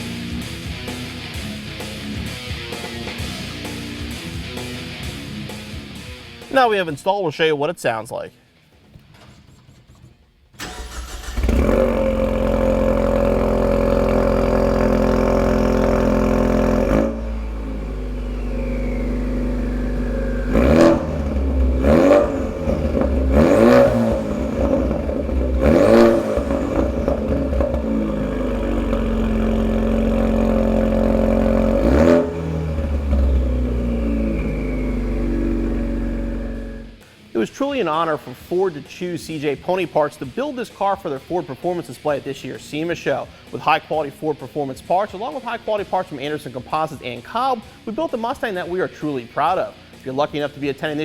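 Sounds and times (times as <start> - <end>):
car engine idling and revving: 10.6 - 37.0.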